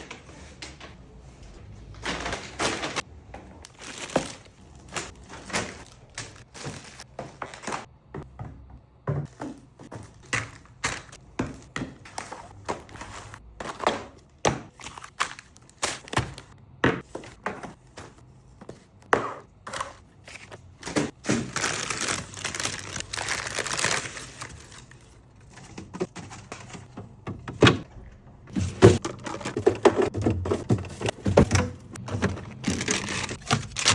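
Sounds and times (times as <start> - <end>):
plastic packaging rustling: 0.0 - 3.0, 3.7 - 7.9, 10.0 - 13.9, 19.7 - 26.9, 28.5 - 33.9
packages knocking and clicking: 1.9 - 27.9, 28.5 - 33.9.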